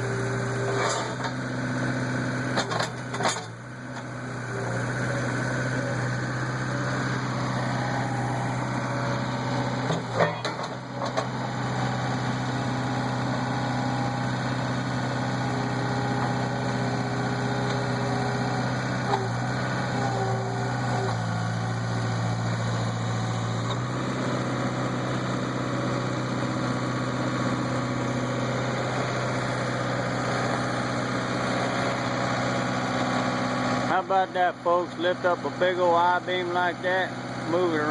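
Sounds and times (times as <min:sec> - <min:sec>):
hydraulics working: 0:00.0 - 0:25.0
skid steer engine running: 0:00.0 - 0:37.9.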